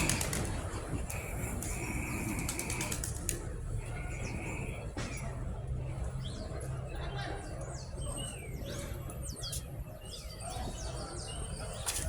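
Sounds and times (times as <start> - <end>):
traffic rumble: 0.0 - 12.0.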